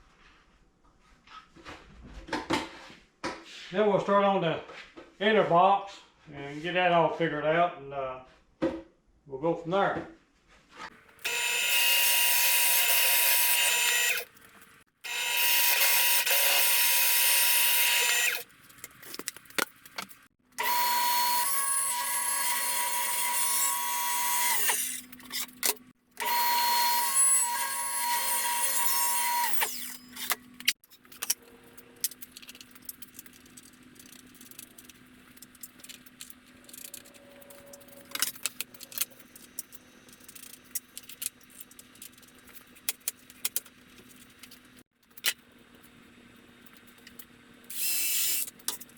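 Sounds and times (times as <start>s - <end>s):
power drill whining: 11.2s - 14.3s, 15.0s - 18.4s, 20.6s - 25.5s, 26.2s - 30.5s.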